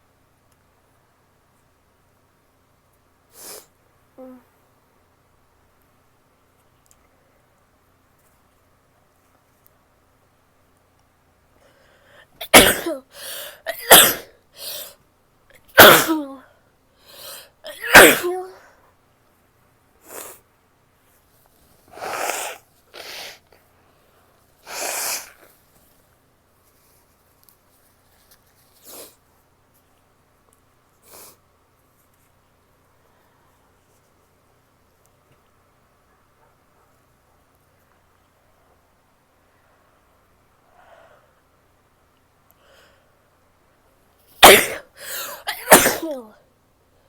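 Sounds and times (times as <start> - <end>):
faint breathing: 11.6 - 12.4, 13.1 - 13.7, 17.0 - 17.6, 40.6 - 41.5, 44.9 - 45.5
woman sneezing: 12.4 - 14.9, 15.7 - 16.4, 17.1 - 18.6, 21.9 - 23.4, 24.7 - 25.4, 44.4 - 46.4.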